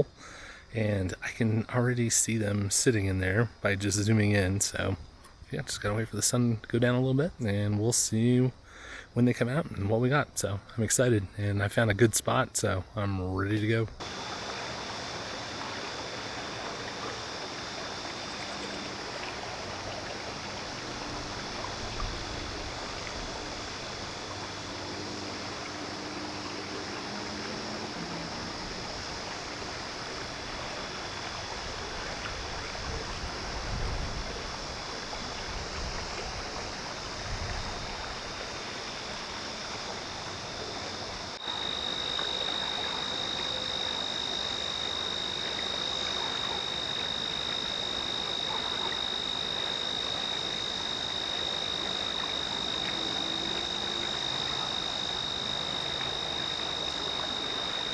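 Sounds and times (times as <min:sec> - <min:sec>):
frogs calling: 0:00.0 - 0:57.9
high insect-like tone: 0:13.6 - 0:57.9
steady rushing hiss: 0:14.0 - 0:57.9
wind bumps on microphone: 0:31.5 - 0:38.4.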